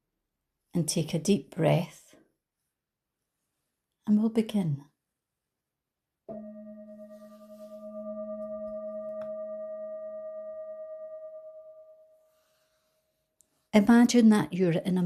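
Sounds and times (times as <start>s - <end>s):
singing bowl ringing: 6.3s - 12.5s.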